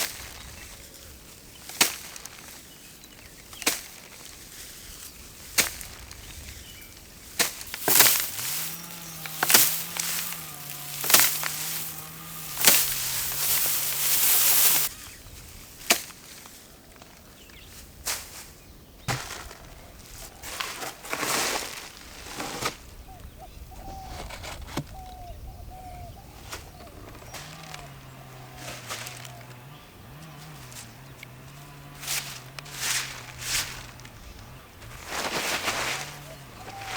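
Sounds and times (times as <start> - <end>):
rice bundles striking: 1.6 - 2.7, 3.5 - 4.6, 5.4 - 6.2, 7.0 - 15.0, 15.8 - 16.5, 30.2 - 36.9
straw swishing: 7.4 - 14.9.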